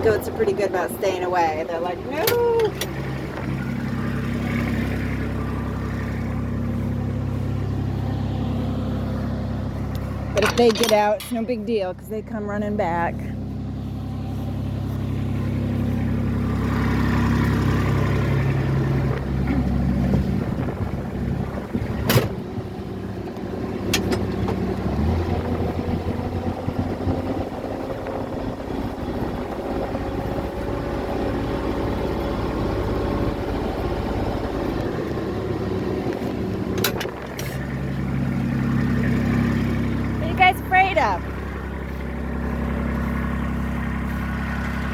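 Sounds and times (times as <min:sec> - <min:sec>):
utility vehicle engine running: 0:00.0 - 0:44.9.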